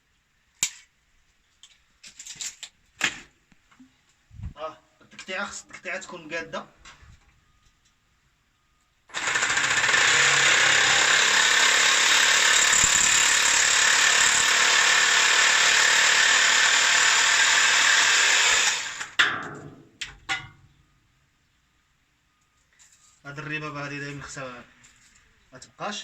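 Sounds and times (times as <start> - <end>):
power tool cutting pipe: 9.1 - 19.2.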